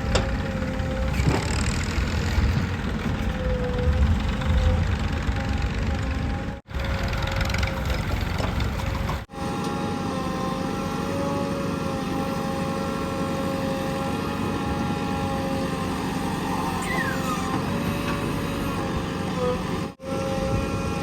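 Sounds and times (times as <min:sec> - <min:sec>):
diesel engine running: 0:00.0 - 0:20.5
whining tones: 0:13.4 - 0:20.8.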